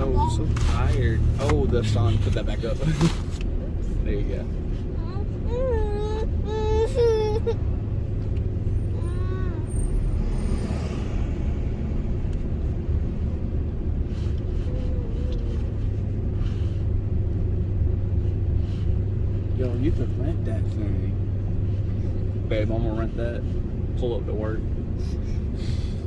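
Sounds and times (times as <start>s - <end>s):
road noise: 0.0s - 26.0s
truck engine rumble: 0.0s - 26.0s
baby vocal sounds: 4.8s - 10.5s, 14.4s - 15.9s.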